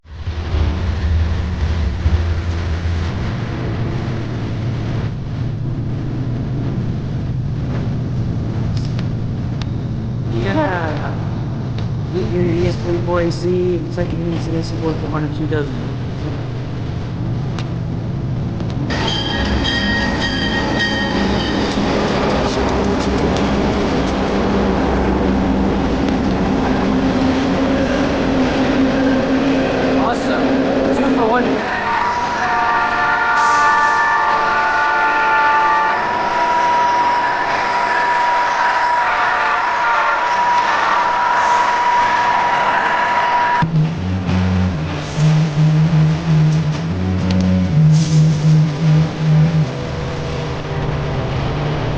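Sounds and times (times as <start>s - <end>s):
vehicle engine hum: 0.0s - 31.6s, 43.6s - 51.9s
train passing rumble: 0.0s - 51.9s
air conditioning fan rush: 0.1s - 19.0s, 20.8s - 31.9s.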